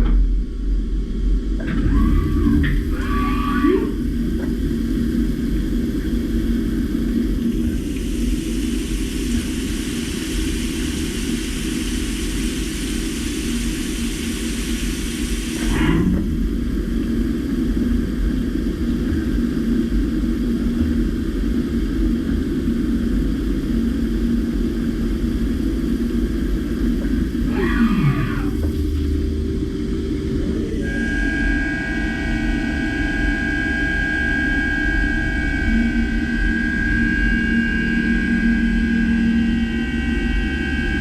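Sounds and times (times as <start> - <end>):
falling machine whine: 1.6 - 18.9, 26.6 - 41.0
milling machine humming: 1.6 - 20.1, 25.5 - 33.5
milling machine hiss: 1.9 - 21.8, 24.0 - 33.6.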